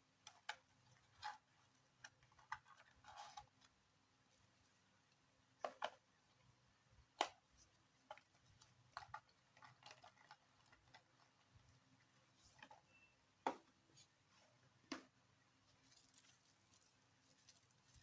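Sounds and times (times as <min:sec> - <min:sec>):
faint clicks and taps: 0:05.0 - 0:06.5, 0:07.1 - 0:14.2.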